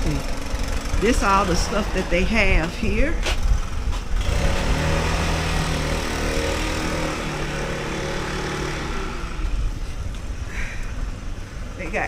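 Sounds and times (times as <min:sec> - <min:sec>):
engine humming: 0:00.0 - 0:12.0.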